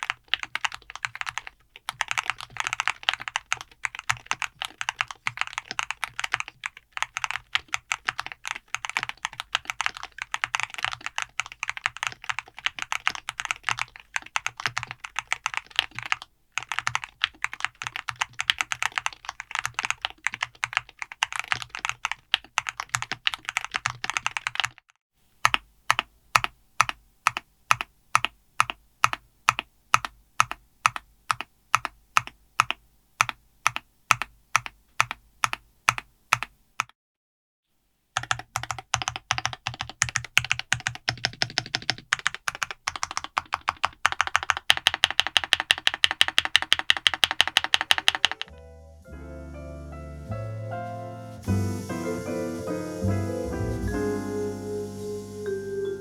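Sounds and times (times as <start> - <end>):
keyboard typing: 0.0 - 36.9, 38.2 - 48.5
music: 48.1 - 56.0.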